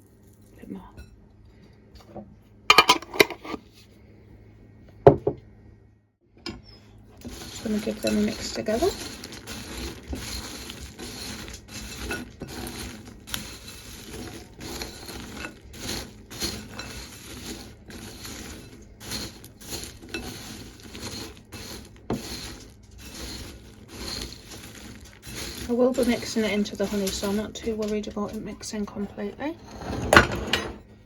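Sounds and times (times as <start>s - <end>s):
spoon stirring nuts in bowl: 7.1s - 29.6s.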